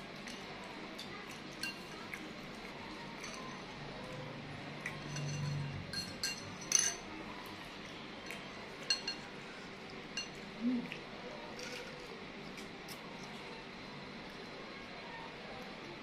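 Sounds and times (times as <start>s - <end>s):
spoon clinking against bowl: 4.9s - 7.1s, 8.8s - 9.3s, 10.2s - 10.4s.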